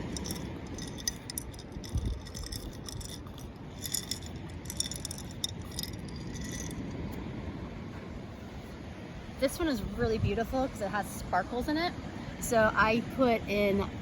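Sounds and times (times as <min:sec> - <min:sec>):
seashells rattling in a plastic bottle: 0:00.0 - 0:06.9.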